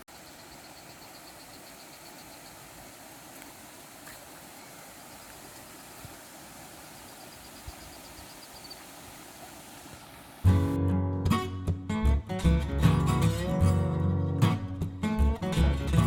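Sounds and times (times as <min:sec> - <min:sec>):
river and waterfall rushing: 0:00.0 - 0:10.8
acoustic guitar music: 0:10.4 - 0:16.0.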